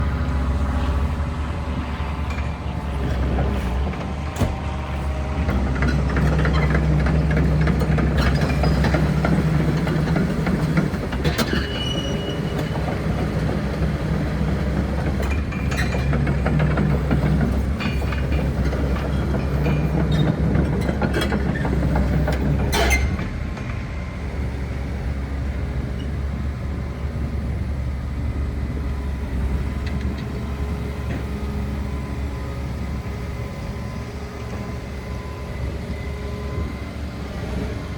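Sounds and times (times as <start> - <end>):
excavator diesel engine running: 0.0 - 37.9
metallic clanks and squeaks: 2.2 - 24.0.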